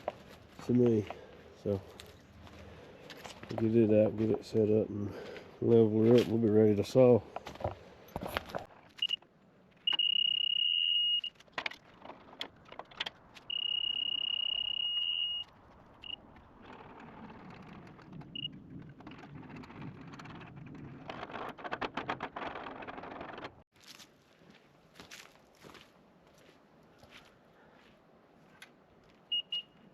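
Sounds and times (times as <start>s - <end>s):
laser level beeping: 9.9s - 11.3s, 13.5s - 15.4s
handling clicks and rustle: 11.1s - 13.6s.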